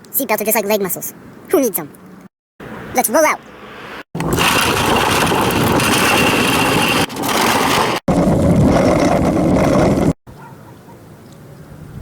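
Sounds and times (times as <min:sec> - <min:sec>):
loud vehicle engine running: 0:04.2 - 0:08.2.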